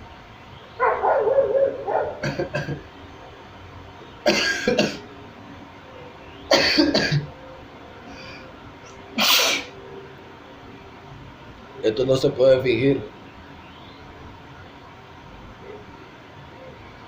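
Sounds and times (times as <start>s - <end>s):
person sneezing: 9.2s - 9.7s.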